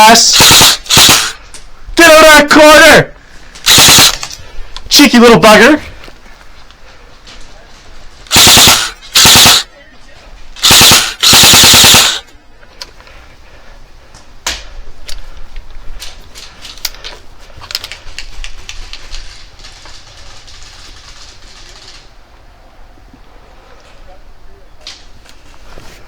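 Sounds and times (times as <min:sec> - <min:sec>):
airsoft gun full-auto bursts: 0:00.0 - 0:01.4, 0:03.6 - 0:04.3, 0:08.3 - 0:09.7, 0:10.6 - 0:12.2
faint clicks and snaps: 0:14.2 - 0:22.1.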